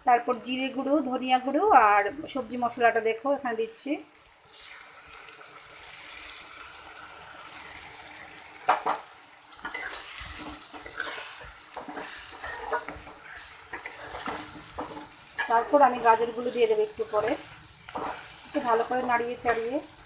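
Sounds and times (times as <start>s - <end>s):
food sizzling in oil: 0.0s - 20.0s
spatula scraping and knocking pan: 9.6s - 19.8s.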